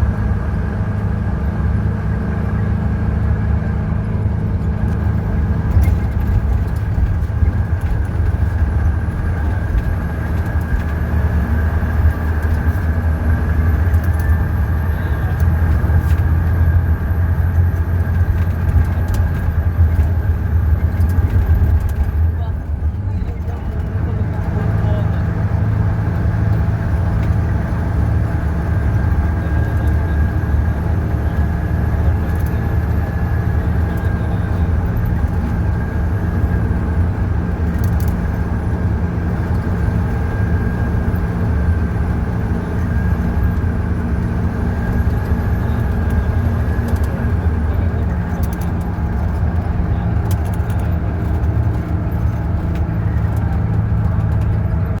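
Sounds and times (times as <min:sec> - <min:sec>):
diesel bus engine drone: 0:00.0 - 0:55.0.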